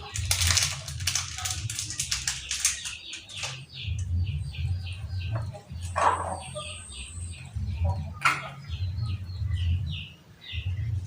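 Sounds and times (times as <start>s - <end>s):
chicken squawk: 5.8s - 8.6s.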